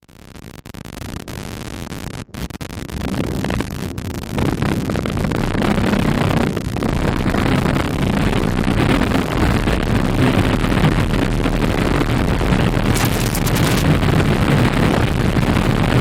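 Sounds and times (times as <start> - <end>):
hissing crackling static: 0.1 - 16.0
deep rumble: 4.0 - 16.0.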